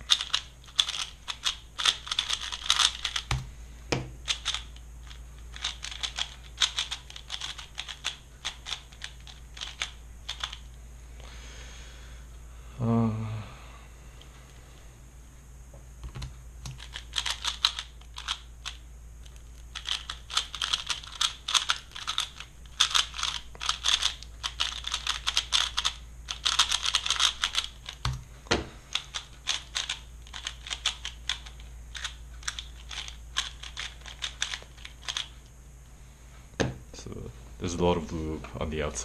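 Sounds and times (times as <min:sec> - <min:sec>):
speedcube clicking and clacking: 0:00.1 - 0:03.5, 0:04.2 - 0:10.7, 0:16.0 - 0:28.2, 0:28.9 - 0:35.5.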